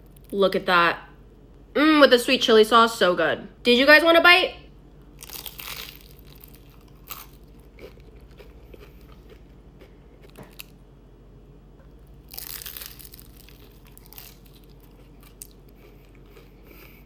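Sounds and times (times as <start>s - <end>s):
chewing crispy fried food: 5.0s - 10.8s, 11.9s - 17.0s.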